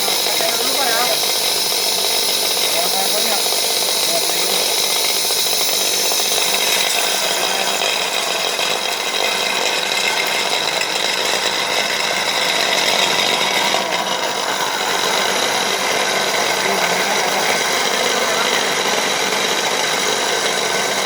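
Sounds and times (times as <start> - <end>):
grinder motor grinding beans: 0.0 - 21.0.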